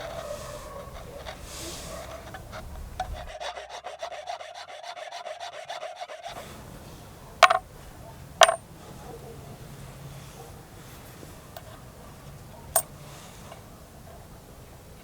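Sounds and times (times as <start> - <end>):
hand file on metal coin: 0.0 - 6.6, 7.4 - 7.6, 8.4 - 8.6
sharp metallic clinks: 8.4 - 8.7, 12.7 - 12.9.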